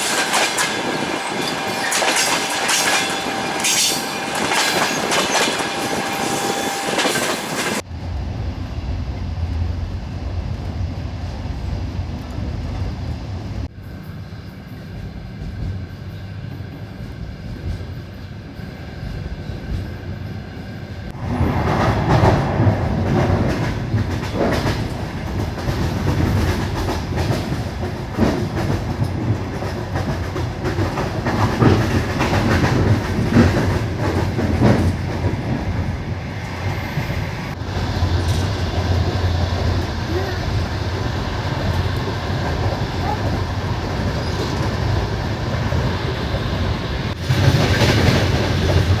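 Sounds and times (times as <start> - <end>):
wheels clattering over rail joints: 0.0 - 7.8
train rumbling on rails: 0.0 - 49.0.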